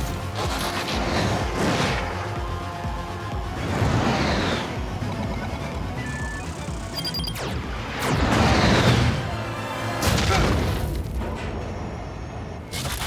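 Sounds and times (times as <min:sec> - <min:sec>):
cartoon action music: 0:00.0 - 0:10.9
loud booming crashes: 0:08.1 - 0:12.0.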